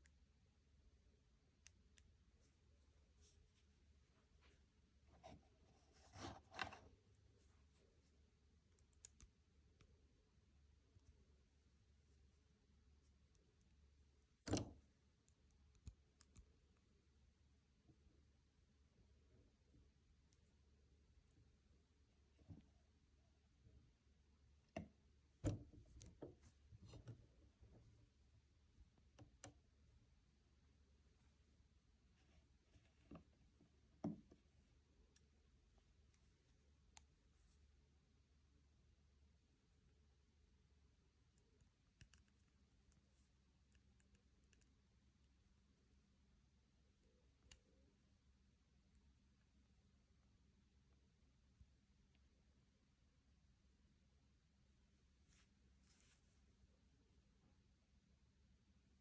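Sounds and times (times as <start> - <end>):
soft clicks: 8.6 - 10.0, 41.3 - 45.4.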